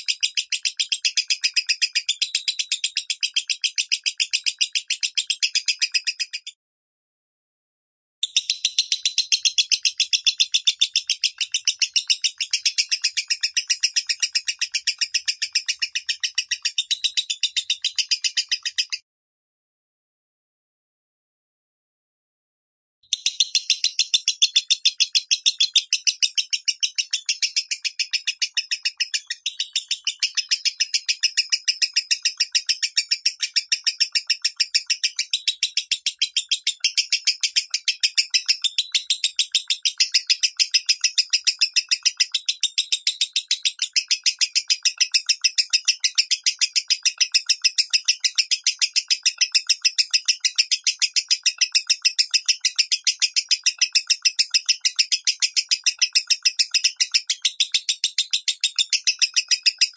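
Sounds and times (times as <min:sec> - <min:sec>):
lovebird shrill chirping: 0:08.2 - 0:19.0, 0:23.1 - 0:59.9.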